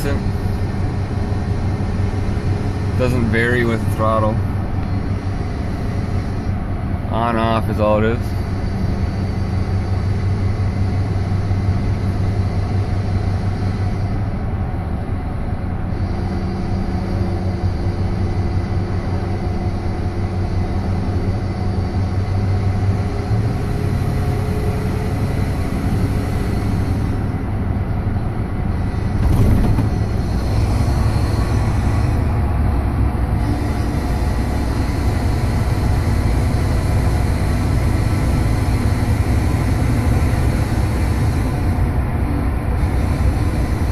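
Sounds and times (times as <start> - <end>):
engine and road noise: 0.0 - 43.9
thump: 29.2 - 30.0.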